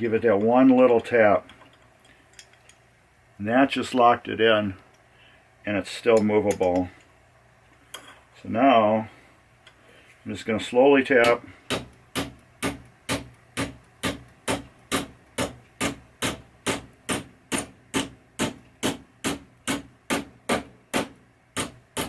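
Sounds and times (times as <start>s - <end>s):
hammer tapping metal punch: 11.2s - 22.0s.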